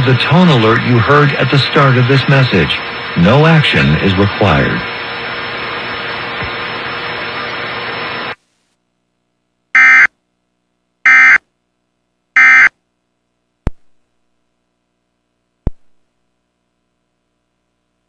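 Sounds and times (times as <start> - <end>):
digital data squawk bursts: 9.8 - 10.1.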